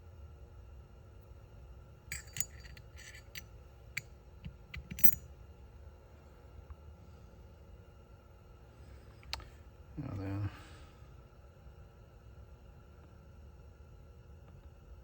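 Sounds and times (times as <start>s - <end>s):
low steady hum: 0.0s - 15.0s
metal ball bearings clinking: 2.1s - 3.5s, 4.7s - 5.2s.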